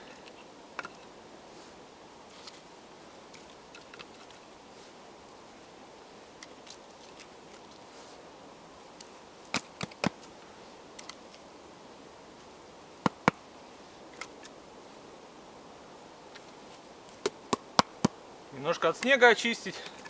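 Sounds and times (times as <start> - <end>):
dry sticks cracking: 9.0 - 11.5.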